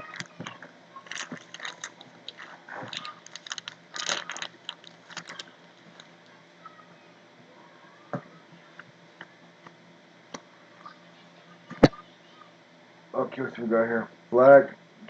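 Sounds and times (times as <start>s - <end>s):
cards and foil pack crackling: 0.0s - 6.2s.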